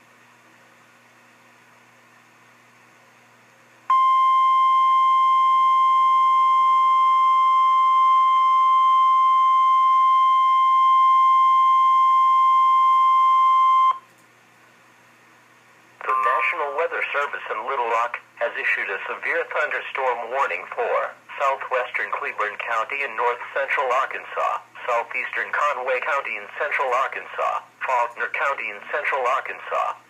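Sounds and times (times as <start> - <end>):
steady warning alarm tone: 3.9 - 14.0
faint radio hiss: 14.6 - 30.0.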